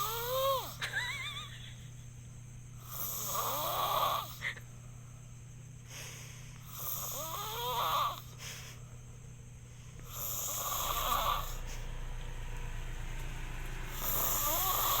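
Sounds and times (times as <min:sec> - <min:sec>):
person snoring: 0:00.0 - 0:00.8, 0:02.9 - 0:04.4, 0:06.7 - 0:08.3, 0:10.0 - 0:11.8, 0:13.9 - 0:15.0.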